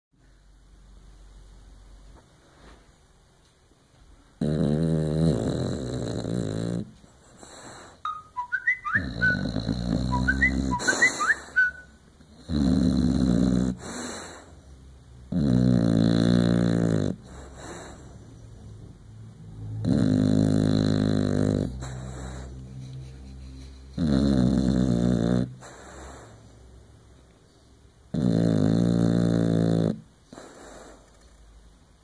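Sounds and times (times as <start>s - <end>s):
dog snoring: 4.4s - 8.0s, 8.6s - 14.6s, 15.3s - 18.3s, 19.7s - 22.6s, 24.0s - 26.5s, 28.1s - 31.4s
dog breathing: 5.1s - 8.0s, 8.9s - 11.8s, 12.4s - 14.7s, 15.3s - 18.4s, 19.9s - 22.9s, 24.0s - 26.6s, 28.2s - 31.4s
high whistling squeaks: 8.1s - 12.0s.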